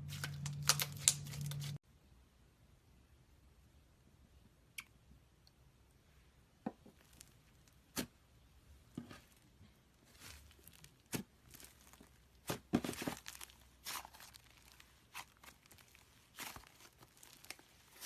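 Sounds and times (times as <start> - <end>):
slime popping and crackling: 10.1 - 18.0.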